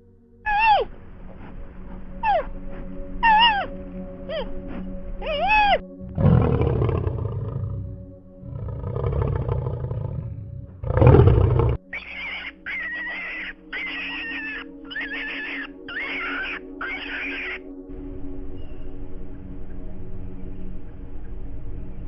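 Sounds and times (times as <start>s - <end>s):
background music: 0.0s - 22.0s
short high repeated calls: 0.5s - 0.9s, 11.9s - 17.6s
lion roaring: 5.2s - 11.8s.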